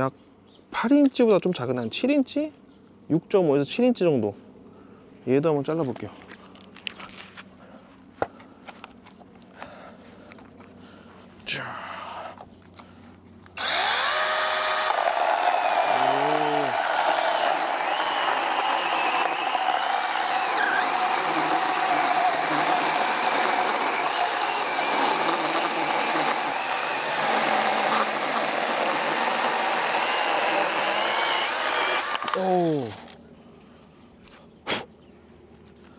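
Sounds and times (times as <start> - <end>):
electric chainsaw cutting log: 13.6 - 33.2.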